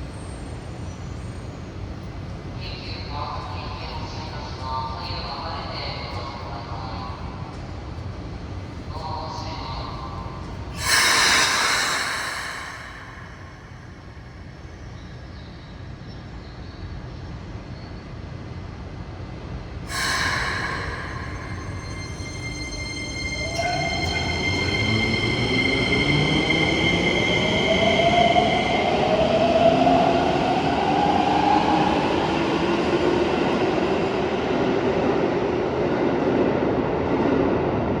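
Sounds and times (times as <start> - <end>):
train air hiss: 10.6 - 15.1, 19.9 - 29.0
low rumble: 10.7 - 14.6, 19.9 - 22.8
faint high whine: 10.7 - 15.1, 19.9 - 26.2.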